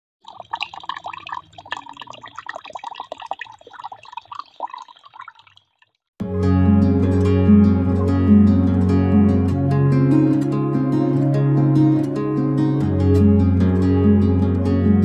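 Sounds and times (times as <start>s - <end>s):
water trickling and dripping: 0.2s - 6.1s
acoustic guitar music: 6.2s - 15.0s.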